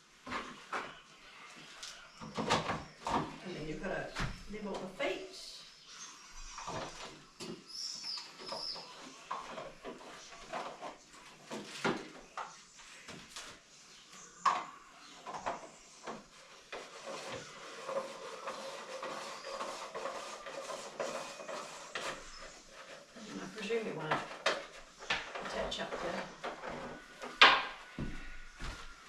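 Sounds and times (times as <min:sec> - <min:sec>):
parts knocking and scraping: 0:14.2 - 0:28.9.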